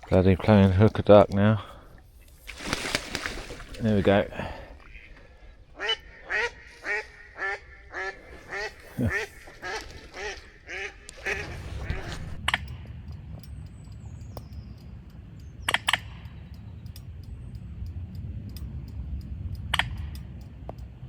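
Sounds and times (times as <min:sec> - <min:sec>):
sharp clicks: 0:00.0 - 0:01.5, 0:11.1 - 0:21.0
duck quacking: 0:03.9 - 0:12.5
low rumble: 0:11.0 - 0:21.0.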